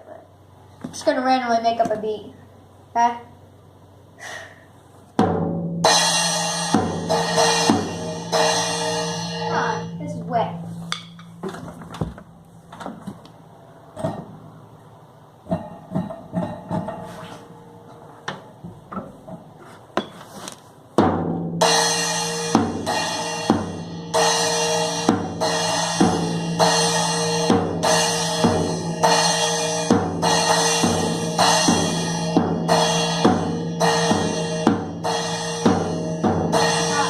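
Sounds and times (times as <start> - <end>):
drum kit beat: 5.2 - 11.4, 21.0 - 37.0.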